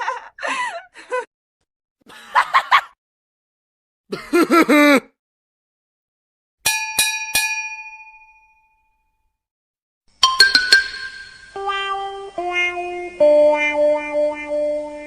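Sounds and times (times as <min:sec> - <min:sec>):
metallic chime dings: 0:06.7 - 0:09.2, 0:10.2 - 0:11.6.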